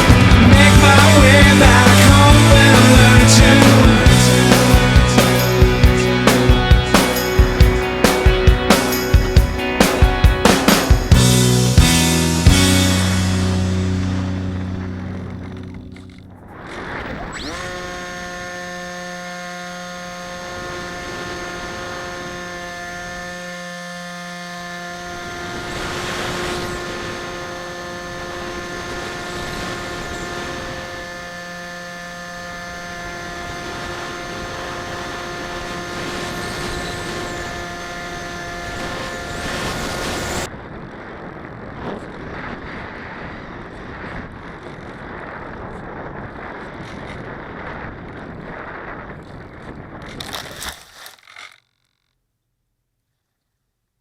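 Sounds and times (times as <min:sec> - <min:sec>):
electric motor and propeller whining: 0:00.0 - 0:52.1
wind noise: 0:25.1 - 0:31.2, 0:32.8 - 0:50.8.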